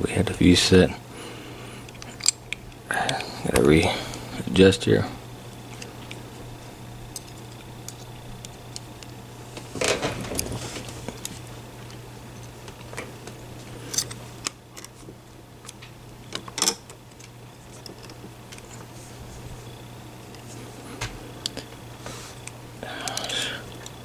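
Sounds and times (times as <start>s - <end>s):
steady low hum: 0.0s - 16.4s, 17.0s - 24.0s
lock pick clicks and scrapes: 13.9s - 14.2s.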